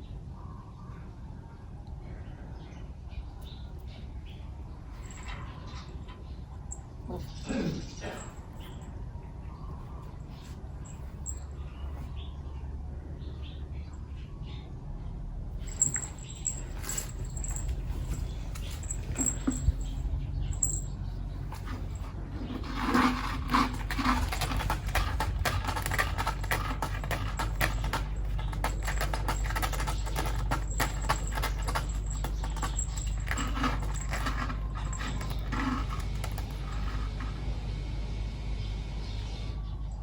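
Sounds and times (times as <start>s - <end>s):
cat claws scratching concrete: 15.6s - 37.3s.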